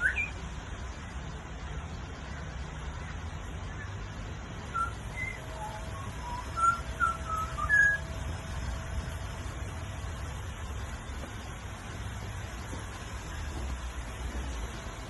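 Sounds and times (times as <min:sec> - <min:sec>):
bird whistling song: 0:00.0 - 0:00.4, 0:04.6 - 0:08.3
steady low rumble: 0:00.6 - 0:15.0.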